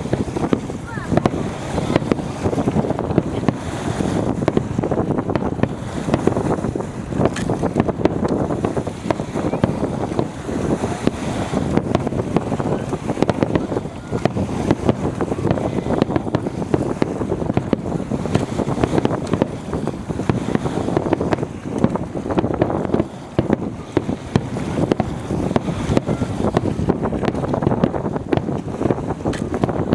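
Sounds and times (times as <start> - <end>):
fireworks crackling and popping: 0.0 - 29.9
wind buffeting microphone: 0.0 - 29.9.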